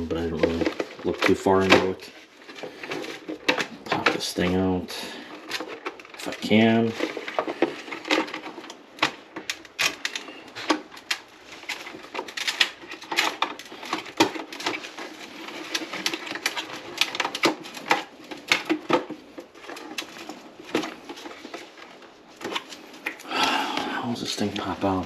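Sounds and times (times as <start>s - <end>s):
exhaust fan housing clicks and rattles: 0.0s - 23.2s.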